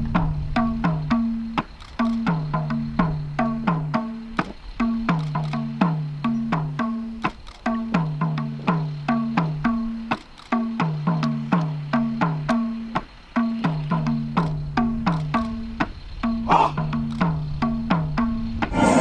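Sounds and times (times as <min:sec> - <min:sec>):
short noisy burst: 0:18.7 - 0:19.0.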